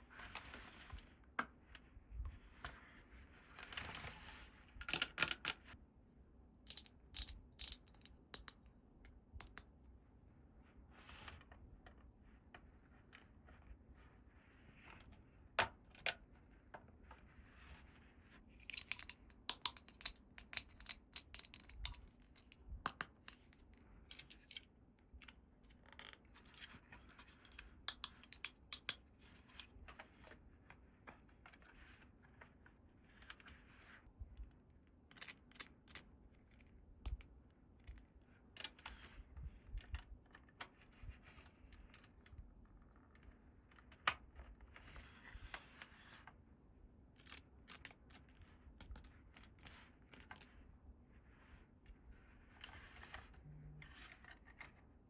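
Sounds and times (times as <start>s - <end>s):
soft scratching and rustling: 0.0s - 4.8s, 16.4s - 18.6s, 48.4s - 55.0s
plastic toy pieces clicking: 4.9s - 5.7s, 6.7s - 8.6s, 18.7s - 22.0s, 35.1s - 36.0s, 47.2s - 50.5s.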